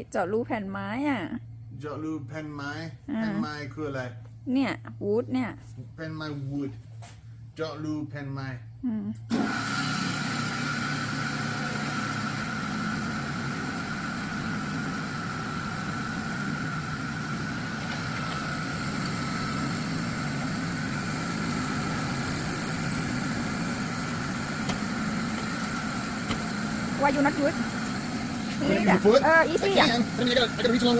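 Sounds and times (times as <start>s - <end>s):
electric drill boring wood: 9.4s - 28.6s.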